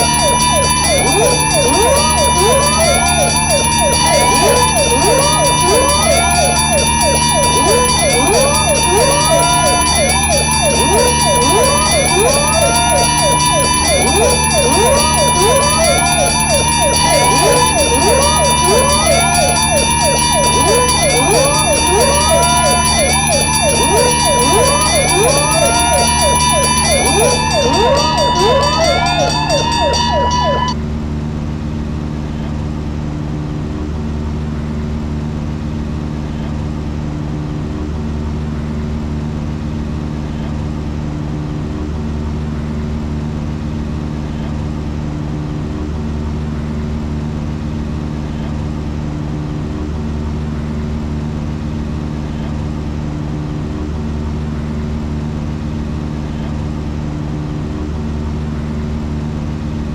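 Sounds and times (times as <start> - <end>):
rising siren-like sweeps: 0.0 - 30.8.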